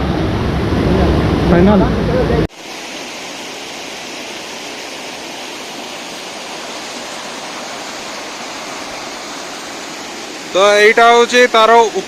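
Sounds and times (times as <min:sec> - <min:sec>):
water rushing over rocks: 0:00.0 - 0:12.0.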